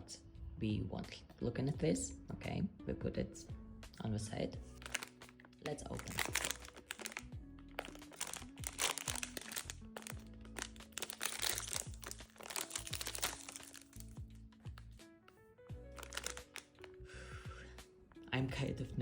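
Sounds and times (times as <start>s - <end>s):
soft background music: 0.0s - 19.0s
packaging crinkling: 4.8s - 14.9s, 16.0s - 17.0s.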